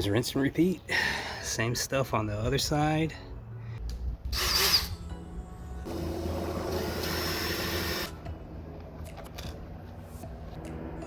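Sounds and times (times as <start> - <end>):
power drill running: 4.3 - 4.9, 5.9 - 8.2.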